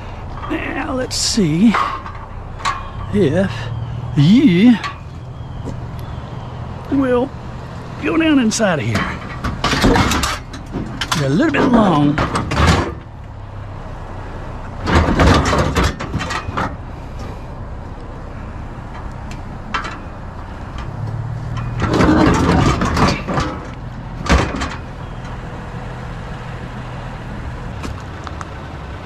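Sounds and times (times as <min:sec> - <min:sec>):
scrap clattering and scraping: 0:01.5 - 0:03.1, 0:08.8 - 0:13.1, 0:14.8 - 0:17.4, 0:19.7 - 0:24.9.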